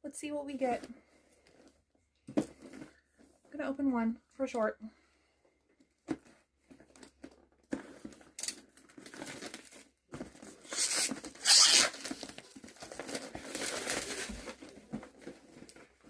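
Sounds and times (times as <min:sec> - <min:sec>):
packaging rustling and clicking: 0:06.1 - 0:16.0
packaging tearing: 0:10.5 - 0:14.6.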